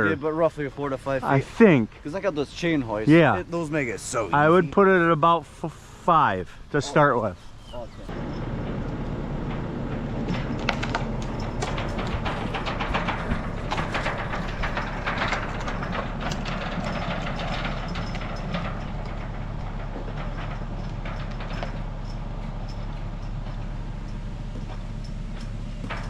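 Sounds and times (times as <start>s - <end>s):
vehicle engine running: 7.9s - 26.0s
rattling and clanking: 8.0s - 26.0s.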